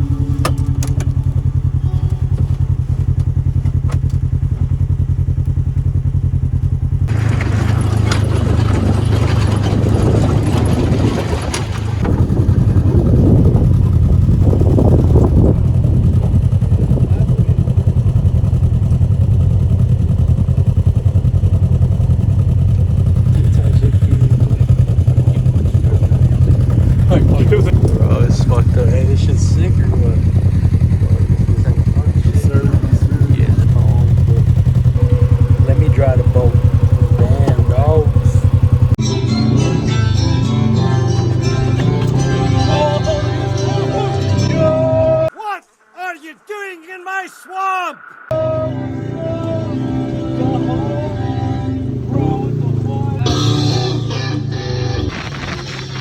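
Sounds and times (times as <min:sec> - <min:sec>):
wind and road noise: 0:00.0 - 0:39.0, 0:54.9 - 0:56.0
vehicle engine running under load: 0:00.0 - 0:45.4, 0:48.1 - 0:56.0.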